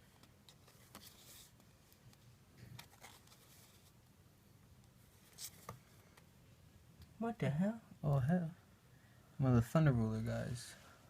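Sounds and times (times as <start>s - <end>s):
trading cards rustling and clicking: 0.1s - 4.0s.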